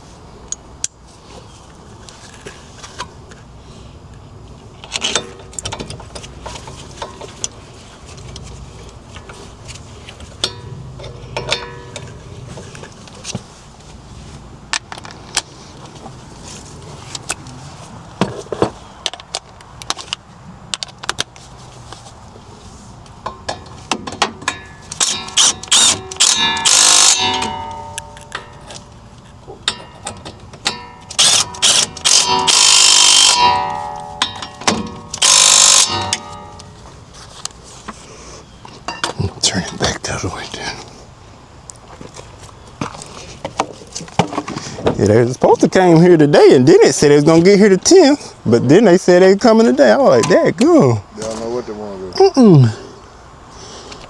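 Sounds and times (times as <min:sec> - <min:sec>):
metallic clanking: 0:10.4 - 0:12.3, 0:23.3 - 0:37.0
ratchet clicking: 0:24.9 - 0:28.5, 0:29.7 - 0:34.5, 0:35.1 - 0:36.7.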